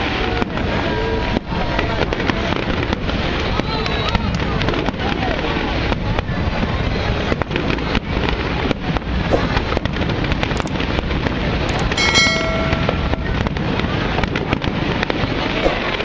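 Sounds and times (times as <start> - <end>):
steady held tone: 11.7 - 13.7.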